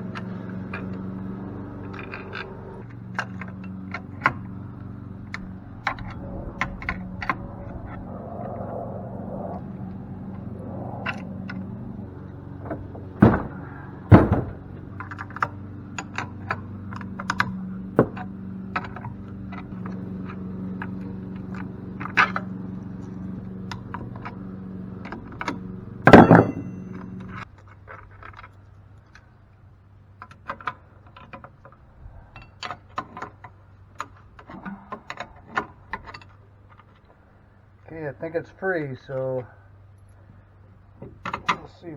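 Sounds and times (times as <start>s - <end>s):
steady hum: 0.0s - 27.4s
hand tools clicking and scraping metal: 0.0s - 40.4s, 41.0s - 41.9s
heavy knocks: 11.0s - 15.6s, 25.4s - 27.2s
ringing metal clang: 25.5s - 27.4s.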